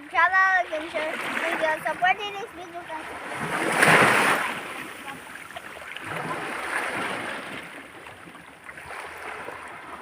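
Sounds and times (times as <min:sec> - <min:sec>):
water washing over sand: 0:00.4 - 0:07.7.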